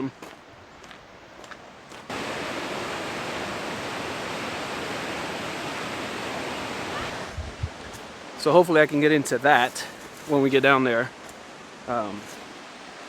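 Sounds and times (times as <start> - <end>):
waterfall rushing: 2.1 - 9.2.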